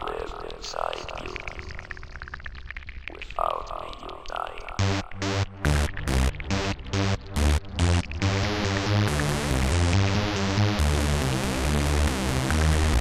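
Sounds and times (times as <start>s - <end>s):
electronic synth music: 4.8s - 13.0s
heavy bass line: 4.8s - 13.0s.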